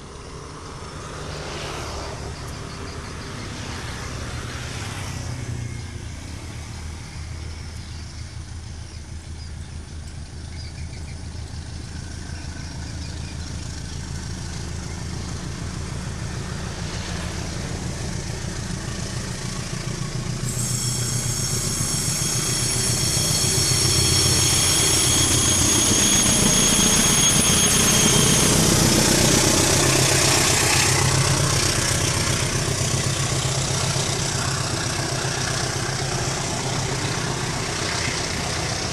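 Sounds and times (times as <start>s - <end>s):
locomotive engine hum: 0.0s - 38.9s
high ringing tones: 20.4s - 32.4s.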